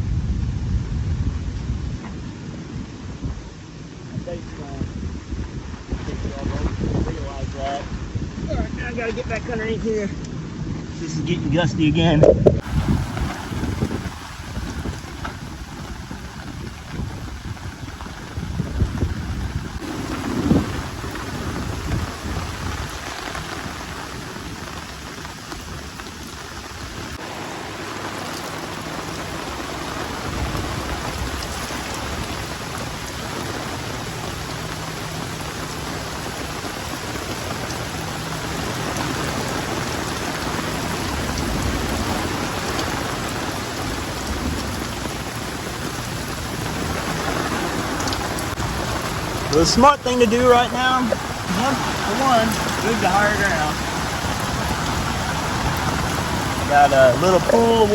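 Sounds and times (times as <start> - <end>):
low thunder rumble: 0.0 - 9.4, 11.6 - 57.9
heavy rain falling: 12.5 - 57.9.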